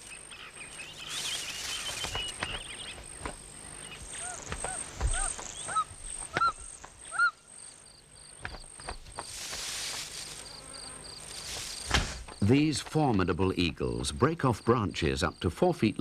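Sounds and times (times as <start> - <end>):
twittering bird calls: 0.0 - 7.7
short arched bird calls: 3.8 - 7.5.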